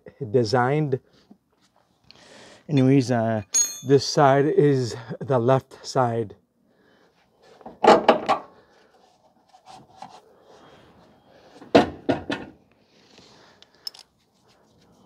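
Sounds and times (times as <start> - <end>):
tools knocking together: 3.5 - 4.0.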